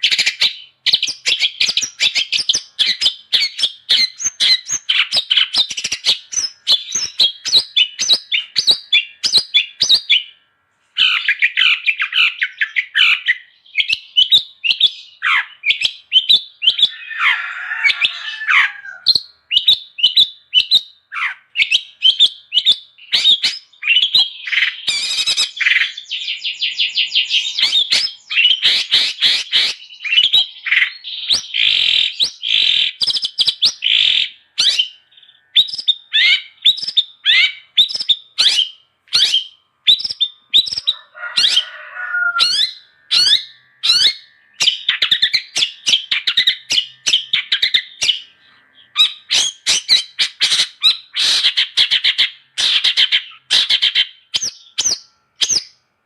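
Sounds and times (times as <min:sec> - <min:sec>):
shrike singing chattering song: 0:00.0 - 0:10.4, 0:11.0 - 0:55.8.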